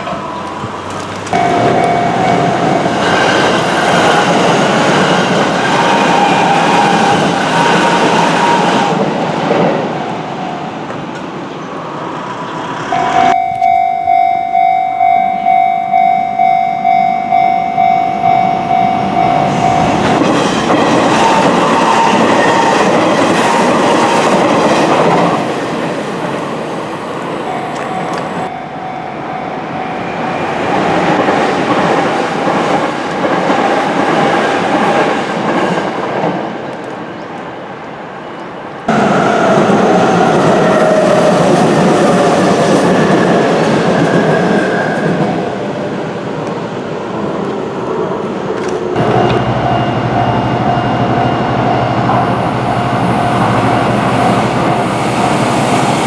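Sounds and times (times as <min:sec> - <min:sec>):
crossing warning bell ringing: 0:00.0 - 0:07.1, 0:12.9 - 0:31.8, 0:49.0 - 0:56.0
trains running past: 0:00.0 - 0:56.0.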